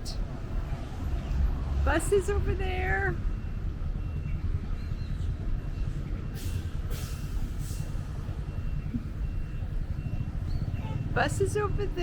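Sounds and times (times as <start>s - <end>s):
traffic rumble: 0.0s - 12.0s
bus air brakes hissing: 5.9s - 8.4s.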